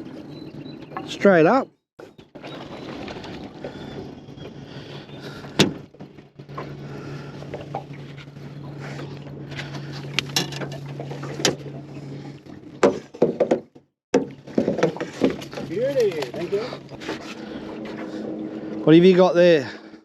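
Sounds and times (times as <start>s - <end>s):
steady low hum: 2.6s - 13.4s, 14.2s - 20.0s
sharp knocks: 12.8s - 15.1s.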